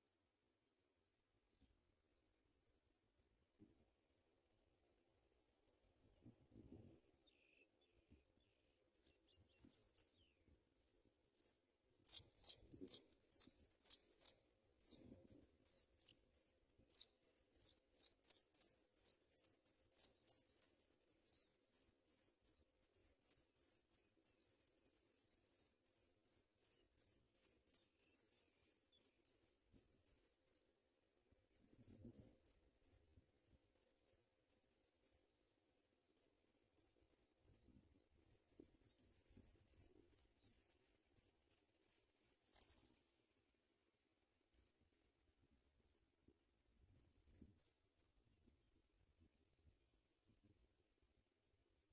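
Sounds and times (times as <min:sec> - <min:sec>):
nestlings high-pitched chirping: 0:11.4 - 0:30.6, 0:31.4 - 0:35.2, 0:35.8 - 0:37.6, 0:38.2 - 0:42.8, 0:47.0 - 0:48.1.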